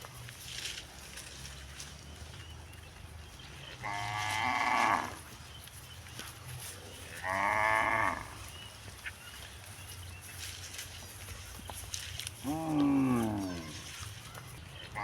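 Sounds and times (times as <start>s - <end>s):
cow mooing: 3.8s - 5.2s, 7.2s - 8.4s, 12.5s - 13.8s.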